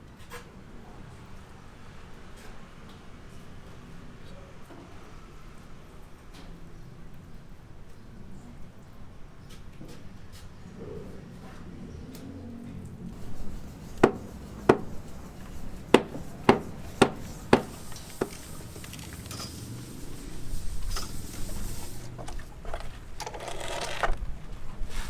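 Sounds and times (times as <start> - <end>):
sharp knocks: 14.0 - 18.6.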